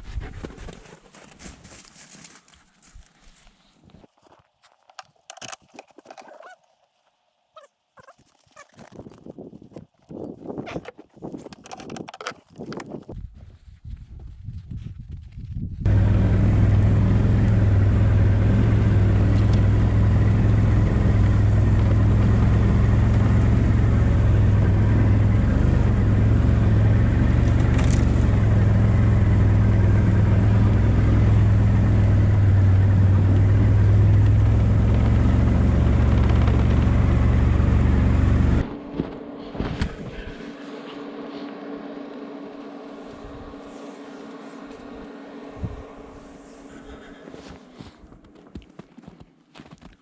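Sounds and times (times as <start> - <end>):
atv engine running: 15.9 - 49.2.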